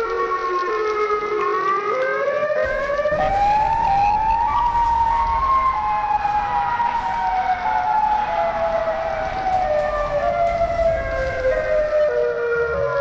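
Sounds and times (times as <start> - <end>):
tornado sirens wailing: 0.0 - 13.0
low rumble: 2.6 - 12.2.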